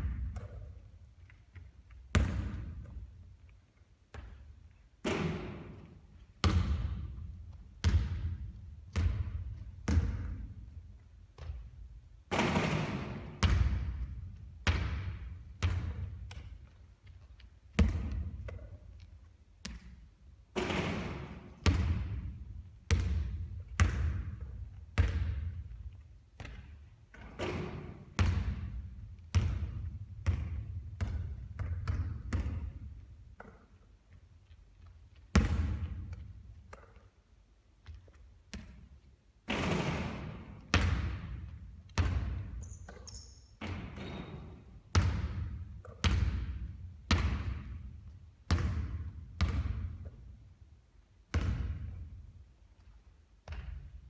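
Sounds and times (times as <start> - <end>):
basketball bouncing on court: 0.0 - 3.3, 4.1 - 34.2, 34.8 - 37.0, 37.8 - 50.4, 51.3 - 54.0.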